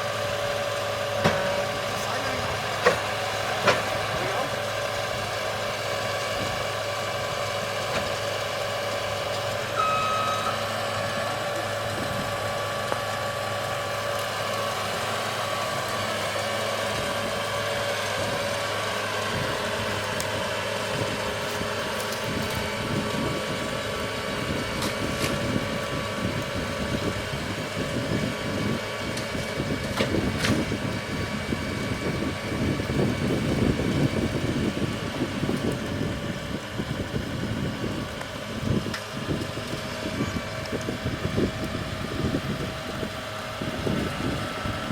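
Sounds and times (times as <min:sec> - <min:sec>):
machine engine running: 0:00.0 - 0:44.9
rough rumble with sharp knocks: 0:01.1 - 0:05.5, 0:06.2 - 0:09.7, 0:19.3 - 0:44.9
short beep: 0:09.8 - 0:10.7.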